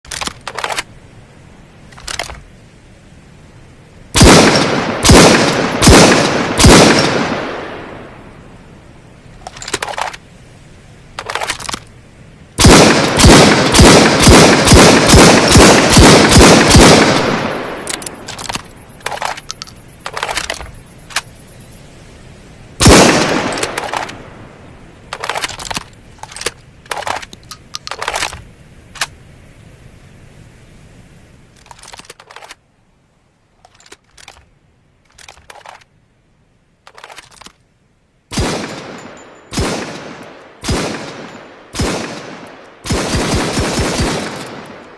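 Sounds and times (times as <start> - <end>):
rifle shots echoing: 4.2 - 8.2, 12.6 - 19.4, 22.8 - 24.4, 38.3 - 44.9.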